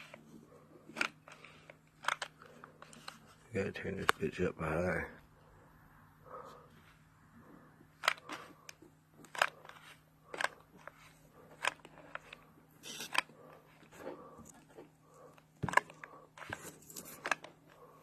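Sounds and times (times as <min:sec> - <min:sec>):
plastic parts clicking: 0:00.0 - 0:03.3, 0:08.0 - 0:17.8
faint steady hum: 0:00.0 - 0:18.0.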